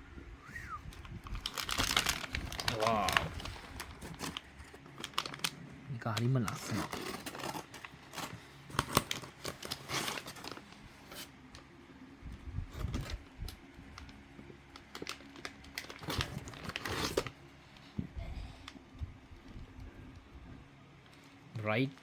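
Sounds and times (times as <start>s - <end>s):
plastic packaging crinkling: 1.0s - 11.7s, 12.6s - 17.4s.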